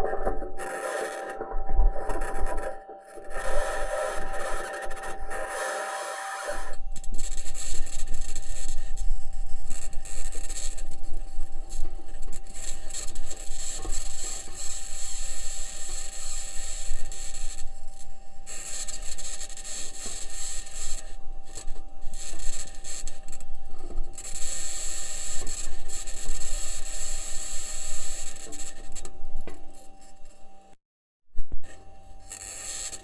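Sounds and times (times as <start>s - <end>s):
metal wheels grinding over rock: 0.0s - 6.7s.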